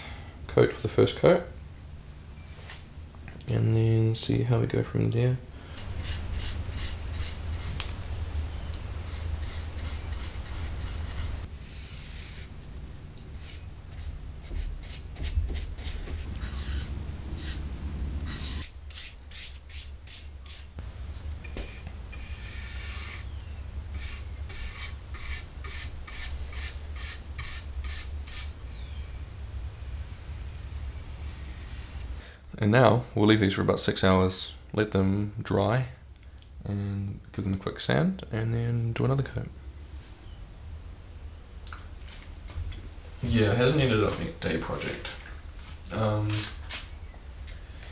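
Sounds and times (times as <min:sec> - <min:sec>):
steady low hum: 0:00.0 - 0:47.9
brush rubbing strokes on wood: 0:05.8 - 0:08.3, 0:08.9 - 0:28.7, 0:29.8 - 0:32.2.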